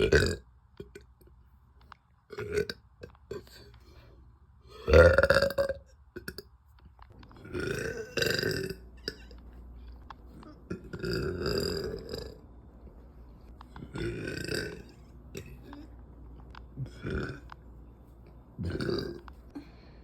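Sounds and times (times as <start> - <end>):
woman burping: 4.7 - 6.4, 7.4 - 9.4, 18.6 - 19.7.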